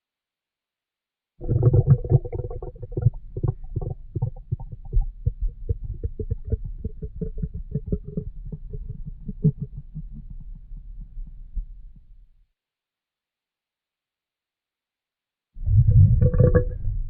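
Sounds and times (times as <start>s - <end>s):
stomach growling and gurgling: 1.4s - 12.2s, 15.6s - 17.0s.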